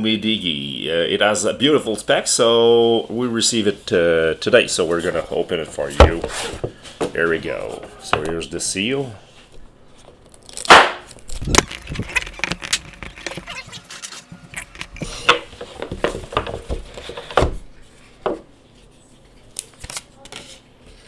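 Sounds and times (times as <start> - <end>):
cardboard and plastic rustling: 3.6 - 21.0
packaging seal ripping: 10.2 - 15.3.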